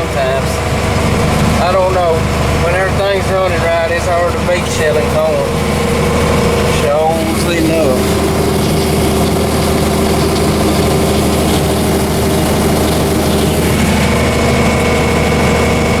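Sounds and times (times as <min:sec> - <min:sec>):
harvest machinery engine drone: 0:00.0 - 0:16.0
high steady whine: 0:00.0 - 0:16.0.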